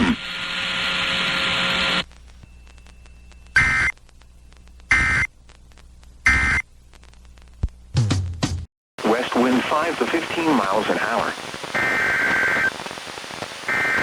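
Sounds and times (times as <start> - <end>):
radio static hiss: 0.0 - 7.8, 9.0 - 14.0
data burst tones: 2.9 - 4.0, 4.9 - 5.3, 9.1 - 14.0.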